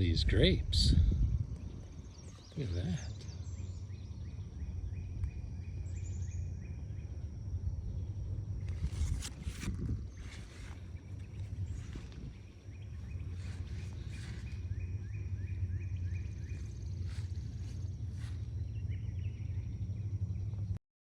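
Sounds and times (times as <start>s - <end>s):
wind on microphone: 0.0s - 3.1s, 8.6s - 15.1s
bird chirping: 1.2s - 20.8s.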